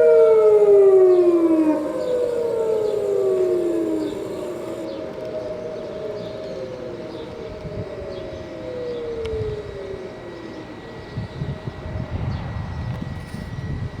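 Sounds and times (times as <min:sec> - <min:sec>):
warning sirens winding down: 0:00.0 - 0:14.0
low rumble: 0:11.2 - 0:14.0.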